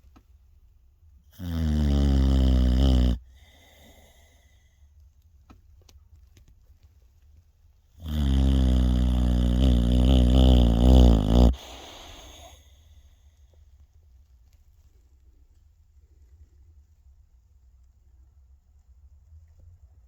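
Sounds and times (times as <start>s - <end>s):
loud snoring: 1.3s - 3.6s, 8.0s - 12.6s
faint breath: 3.2s - 5.0s, 8.9s - 13.8s.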